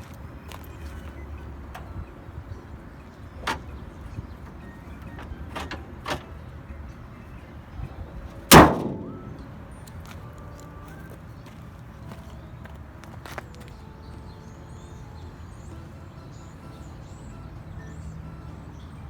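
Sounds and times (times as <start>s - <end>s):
car hood slamming shut: 3.4s - 3.8s, 4.4s - 6.3s, 8.5s - 9.5s
light clicks and knocks: 3.4s - 6.3s.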